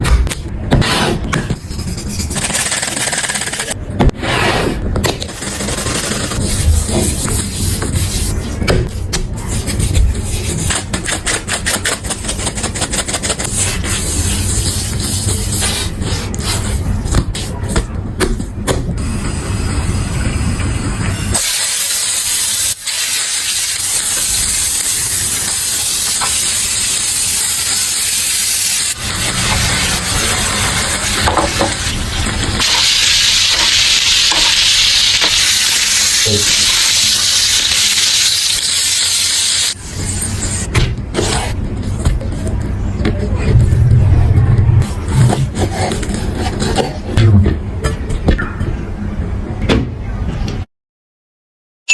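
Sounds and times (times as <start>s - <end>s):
steak sizzling in a hot pan: 32.6s - 39.8s
knocks and scrapes: 40.3s - 48.4s.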